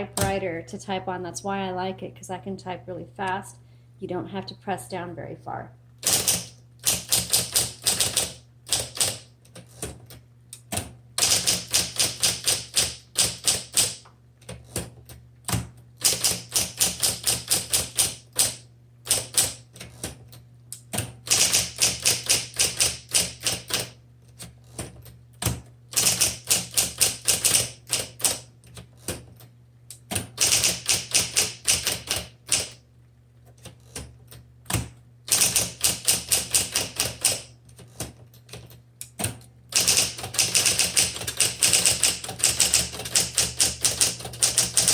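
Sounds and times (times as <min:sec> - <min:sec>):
typewriter key strikes: 0:06.0 - 0:09.3, 0:10.6 - 0:14.0, 0:15.5 - 0:19.6, 0:20.9 - 0:24.0, 0:30.0 - 0:32.8, 0:34.7 - 0:44.9
typewriter motor hum: 0:06.0 - 0:32.8, 0:33.5 - 0:44.9.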